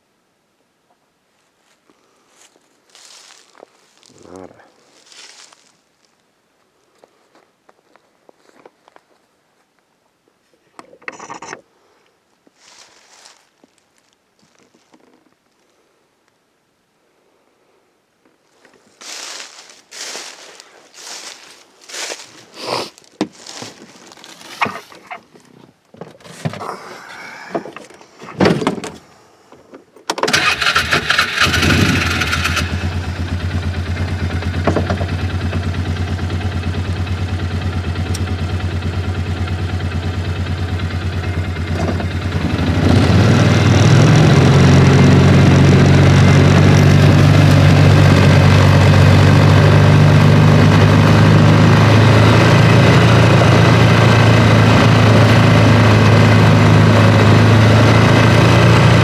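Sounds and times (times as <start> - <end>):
vehicle engine cranking and starting: 30.1 - 59.0.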